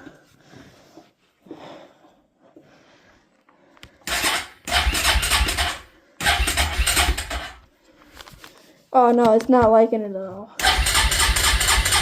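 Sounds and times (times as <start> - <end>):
engine cranking: 4.1 - 7.6, 10.6 - 12.0.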